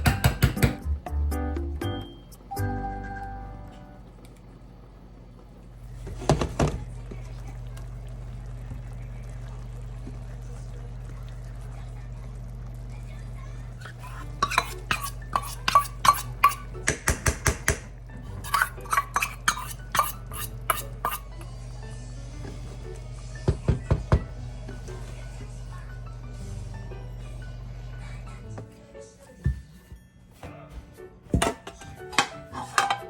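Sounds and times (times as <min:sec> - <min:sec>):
steady low hum: 0:00.9 - 0:16.9
dishes clattering: 0:13.8 - 0:21.5, 0:31.3 - 0:33.0
utensil clinking against dish: 0:13.8 - 0:21.5, 0:31.4 - 0:33.0.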